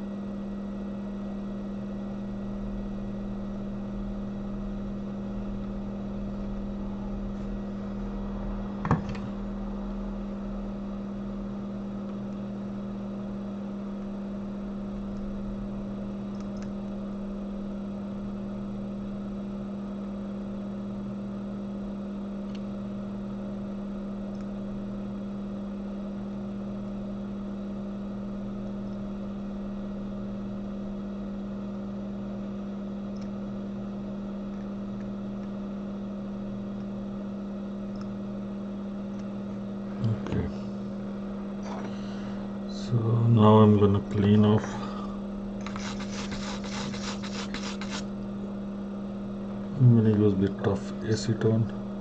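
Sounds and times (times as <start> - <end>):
motor humming: 38.8 - 48.6.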